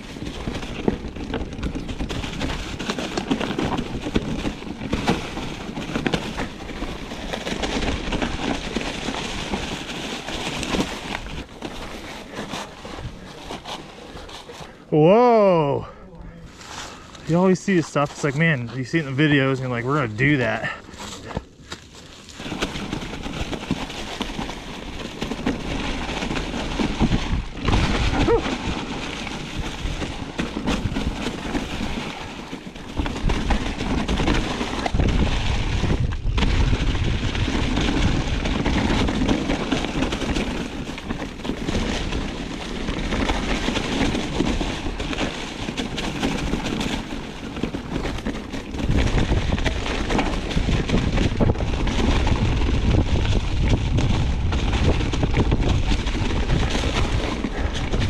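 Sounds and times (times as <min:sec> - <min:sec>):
wind buffeting microphone: 0:33.0 - 0:39.3, 0:48.2 - 0:58.0.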